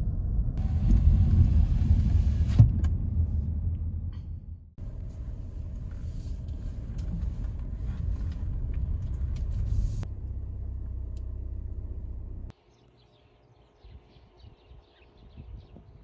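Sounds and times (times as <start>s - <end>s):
low vehicle rumble: 0.0s - 12.5s.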